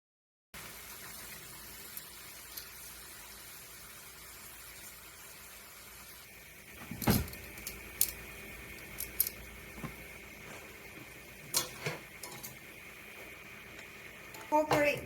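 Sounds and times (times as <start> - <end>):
cookware clicks and knocks: 11.5 - 12.6.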